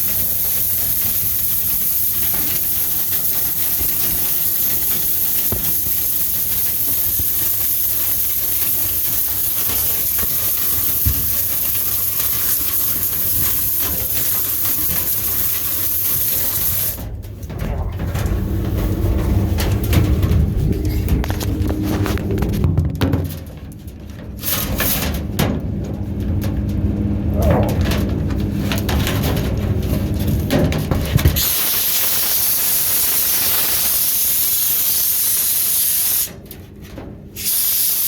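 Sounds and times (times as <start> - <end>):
air rushing with hiss: 0.0 - 17.0, 37.4 - 38.0
rubbing noises: 2.6 - 23.6
low rumble: 17.1 - 24.4, 25.5 - 31.0.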